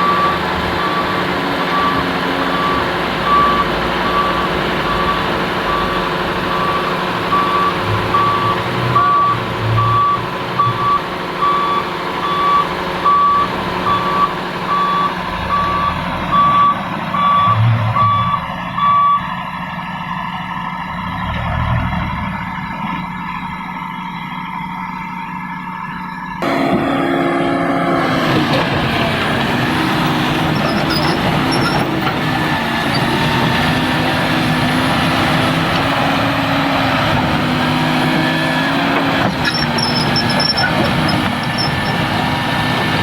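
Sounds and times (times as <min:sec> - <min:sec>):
excavator travel alarm beeping: 0:00.0 - 0:19.3, 0:39.4 - 0:42.1
excavator engine running: 0:00.0 - 0:43.0.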